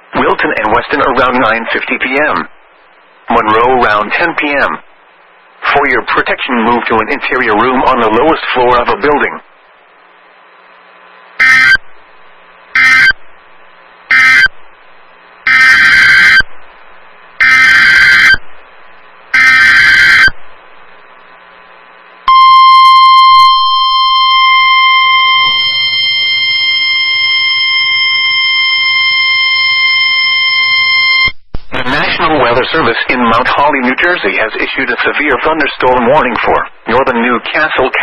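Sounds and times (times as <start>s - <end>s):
screeching data tone bursts: 11.4s - 11.9s, 12.7s - 13.2s, 14.1s - 14.6s, 15.4s - 16.5s, 17.4s - 18.5s, 19.3s - 20.4s, 22.3s - 31.4s.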